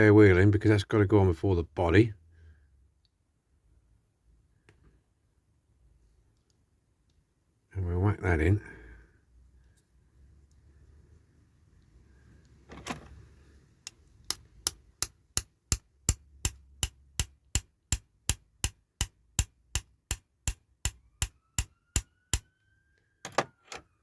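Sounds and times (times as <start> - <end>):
small hammer tapping: 13.8 - 22.5.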